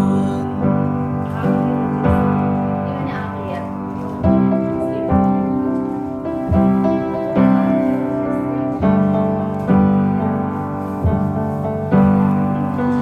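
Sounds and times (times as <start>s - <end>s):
person singing: 0.0s - 3.6s
piano chords: 0.0s - 13.0s.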